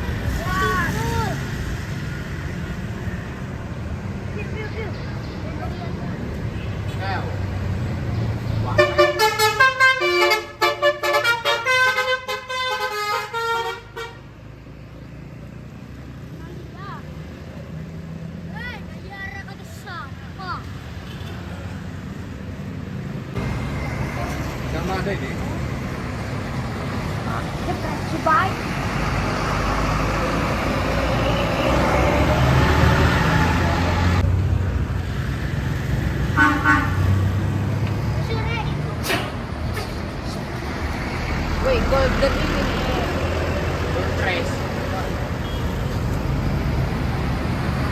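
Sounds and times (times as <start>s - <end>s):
bus engine rumble: 0.0s - 47.9s
road noise hiss: 0.0s - 47.9s
musical bus air horn: 8.8s - 14.3s, 36.4s - 37.2s.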